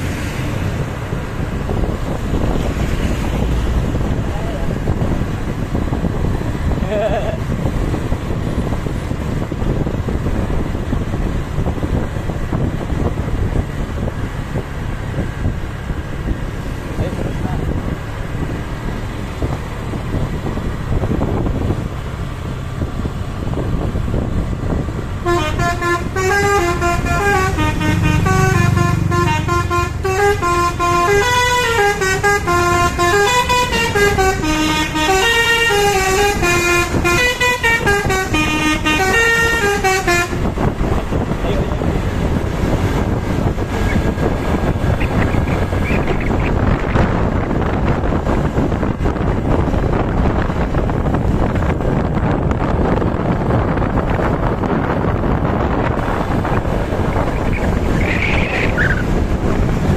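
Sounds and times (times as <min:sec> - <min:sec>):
engine noise: 0:00.0 - 0:59.9
road noise: 0:00.0 - 0:59.9
wind noise: 0:00.0 - 0:59.9
multi-tone bus horn playing tune: 0:25.2 - 0:41.9.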